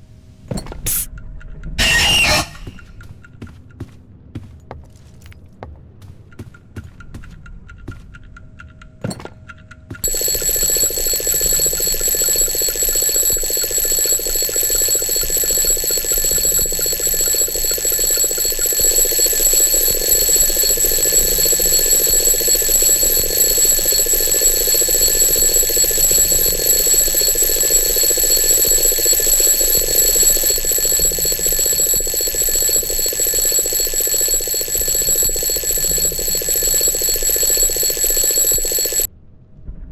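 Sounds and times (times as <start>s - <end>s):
alarm clock ringing: 1.8s - 2.8s, 10.0s - 39.1s.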